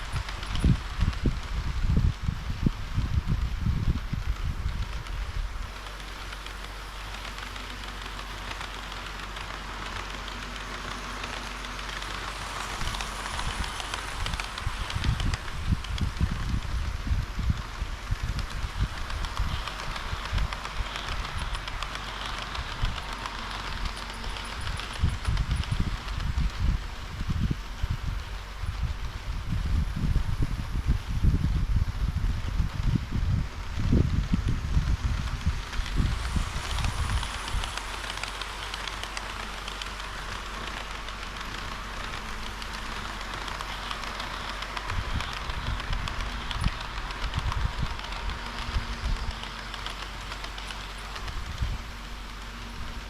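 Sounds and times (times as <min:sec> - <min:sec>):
model train wheels clicking: 0:00.0 - 0:53.0
running hiss: 0:00.0 - 0:53.0
wheel clicks: 0:18.3 - 0:26.8.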